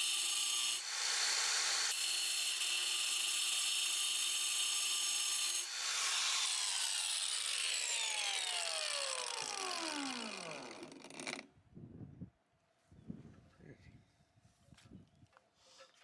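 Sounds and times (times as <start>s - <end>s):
tile cutting power tool winding down: 5.1s - 11.4s.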